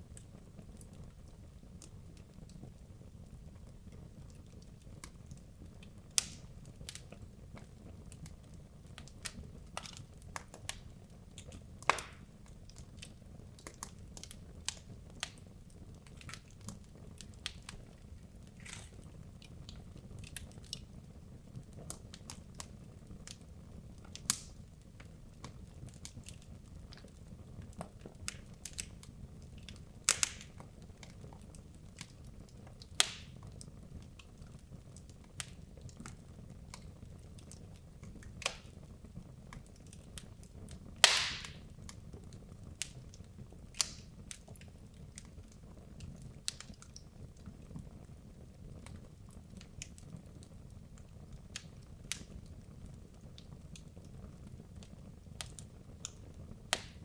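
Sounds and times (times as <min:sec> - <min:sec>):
fire crackling and popping: 0:00.0 - 0:57.0
low rumble of fire: 0:00.0 - 0:57.0
loud wood snaps: 0:11.8 - 0:12.3, 0:30.1 - 0:30.6, 0:33.0 - 0:33.3, 0:41.0 - 0:41.6, 0:43.8 - 0:44.1, 0:56.7 - 0:57.0.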